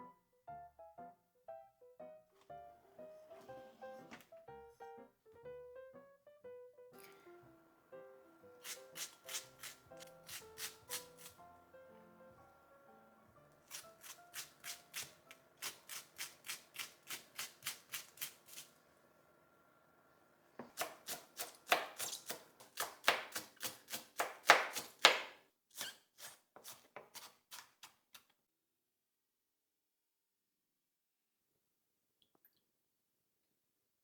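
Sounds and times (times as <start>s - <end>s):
knife chopping on cutting board: 8.6s - 11.4s, 13.7s - 18.7s, 20.6s - 28.0s.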